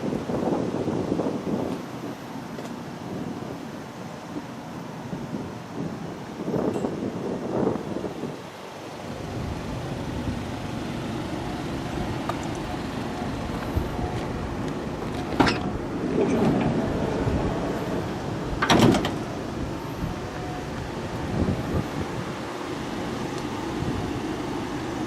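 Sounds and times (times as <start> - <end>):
steady wind noise: 0.0 - 25.0
vehicle doors shutting: 9.1 - 22.1.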